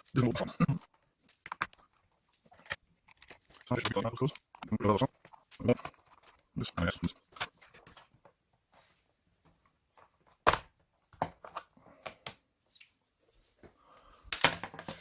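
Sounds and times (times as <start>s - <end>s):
plastic laptop cover clicks: 10.4s - 12.4s.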